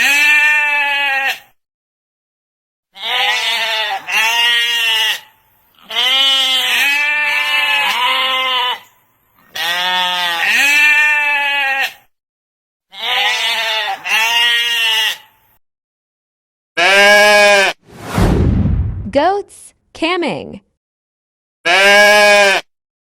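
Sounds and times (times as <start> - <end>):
sheep bleating: 0.0 - 1.6, 3.0 - 12.1, 12.9 - 15.5, 16.8 - 17.8, 21.6 - 22.7.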